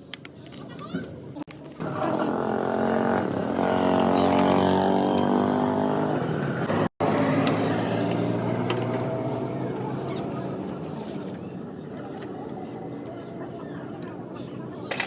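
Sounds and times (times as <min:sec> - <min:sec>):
motorcycle engine running: 0:01.8 - 0:11.1.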